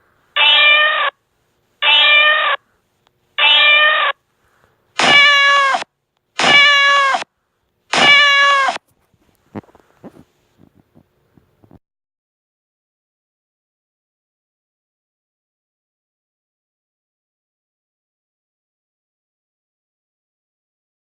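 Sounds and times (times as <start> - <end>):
cat meowing: 0.4 - 1.1, 1.8 - 2.6, 3.4 - 4.2, 5.0 - 5.8, 6.4 - 7.2, 8.0 - 8.8.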